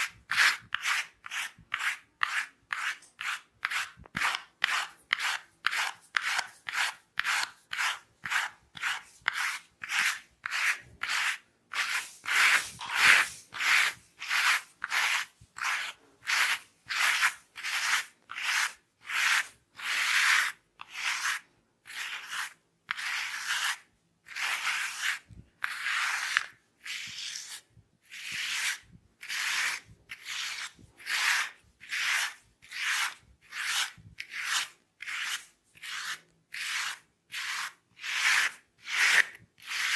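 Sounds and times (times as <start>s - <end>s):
hair rubbing strokes: 4.9s - 19.6s.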